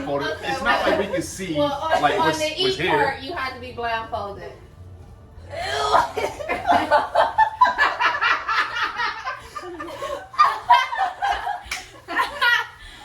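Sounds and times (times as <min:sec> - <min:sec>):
people laughing and snickering: 0:05.5 - 0:13.0.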